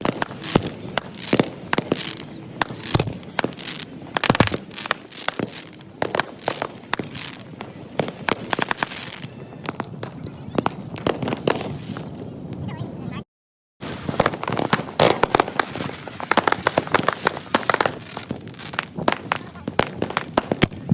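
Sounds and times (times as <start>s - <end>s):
fireworks bangs and pops: 0.0s - 12.9s, 13.8s - 20.9s.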